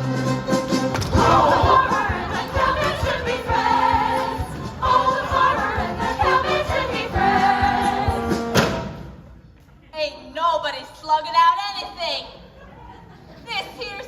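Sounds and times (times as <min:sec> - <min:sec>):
orchestra playing fast music: 0:00.0 - 0:08.7
steady drum beat: 0:00.1 - 0:09.0.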